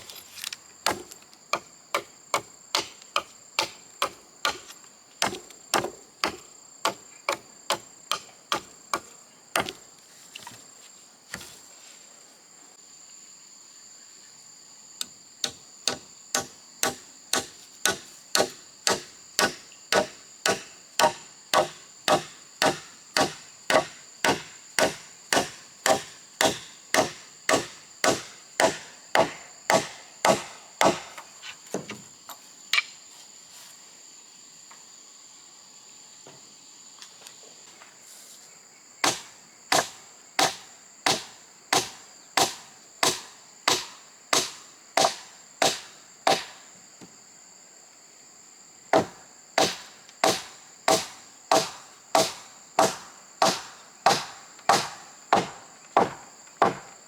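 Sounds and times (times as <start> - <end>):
insects chirring: 0.0 - 57.0
tool striking wood: 0.9 - 1.1, 2.0 - 9.8, 15.4 - 31.2, 49.0 - 56.9.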